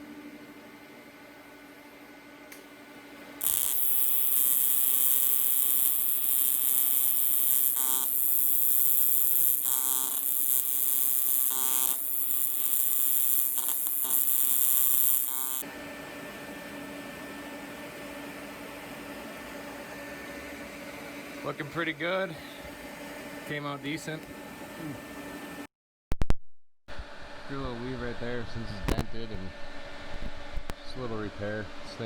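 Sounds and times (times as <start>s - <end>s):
welding arc buzzing hiss: 3.4s - 15.6s.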